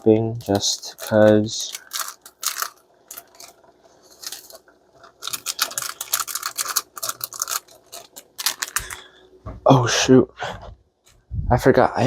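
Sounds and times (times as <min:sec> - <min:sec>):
packet rustling: 0:00.0 - 0:09.2.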